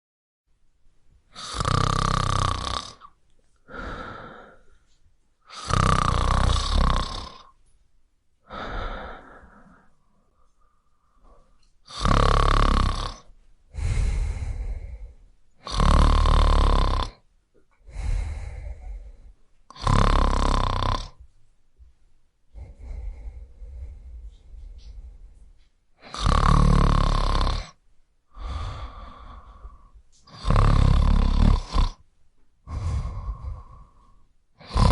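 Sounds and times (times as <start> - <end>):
person snoring: 1.3 - 4.7, 5.5 - 7.6, 8.4 - 10.0, 11.2 - 17.2, 17.8 - 21.2, 22.5 - 25.4, 26.0 - 32.0, 32.7 - 34.9.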